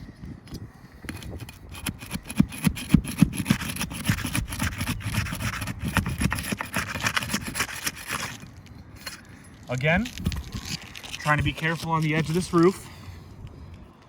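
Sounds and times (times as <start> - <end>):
flat bar scraping shingles: 1.1 - 9.4.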